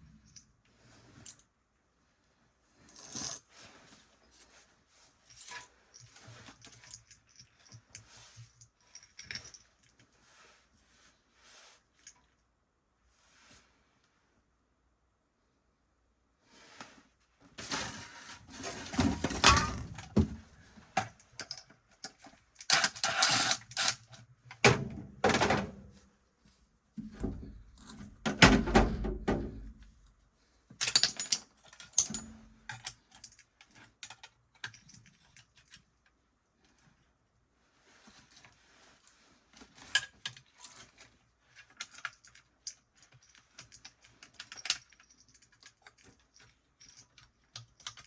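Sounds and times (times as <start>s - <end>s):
tools and metal parts clattering: 5.3s - 9.9s, 17.6s - 25.8s, 27.0s - 30.1s, 30.8s - 35.8s, 39.7s - 48.0s.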